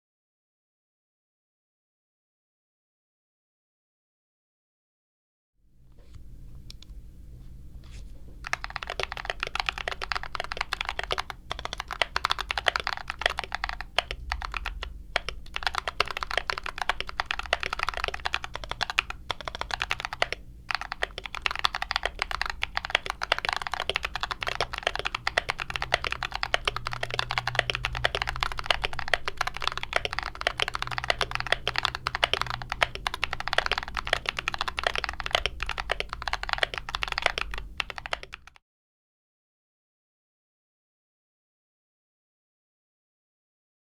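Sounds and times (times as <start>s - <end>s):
typing on mechanical keyboard: 8.4s - 38.6s.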